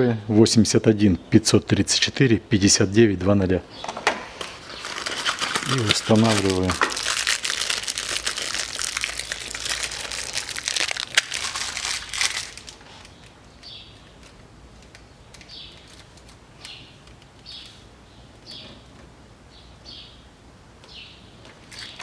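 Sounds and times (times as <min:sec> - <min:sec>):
plastic packaging crinkling: 0:04.4 - 0:13.4, 0:14.1 - 0:17.2.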